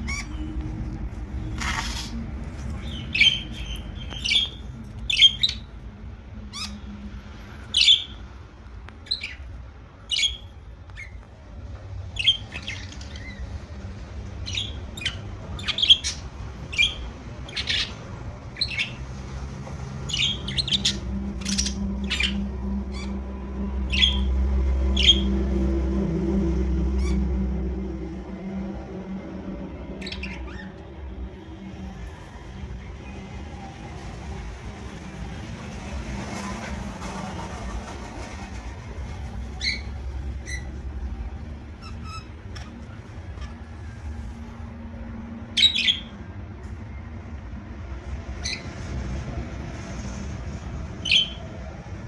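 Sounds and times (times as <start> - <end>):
budgerigars chirping and squawking: 0.0 - 0.5, 2.8 - 5.7, 6.5 - 6.8, 7.6 - 8.2, 9.0 - 9.5, 10.1 - 11.2, 12.1 - 13.7, 14.4 - 19.0, 20.0 - 23.2, 23.9 - 24.3, 24.9 - 25.4, 30.0 - 30.8, 39.6 - 40.8, 41.8 - 43.7, 45.5 - 46.2, 48.4 - 48.7, 51.0 - 51.4
low steady hum: 0.0 - 51.0.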